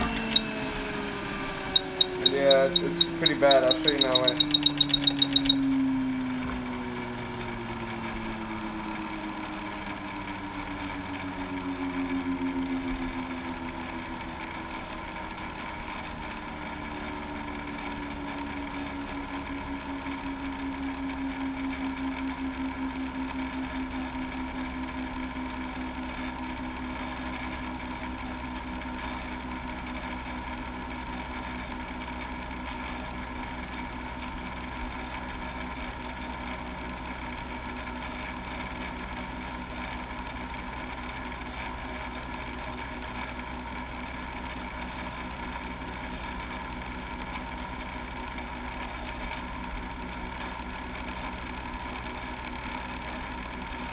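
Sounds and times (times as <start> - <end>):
small motor humming: 0.0 - 11.7.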